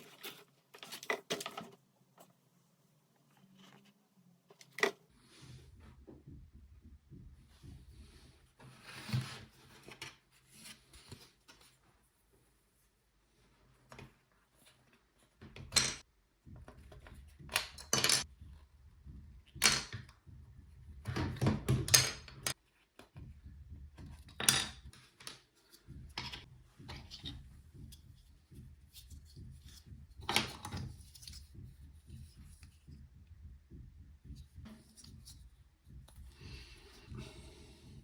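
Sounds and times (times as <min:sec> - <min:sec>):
faint low rumble: 0:18.3 - 0:21.4, 0:30.9 - 0:38.0.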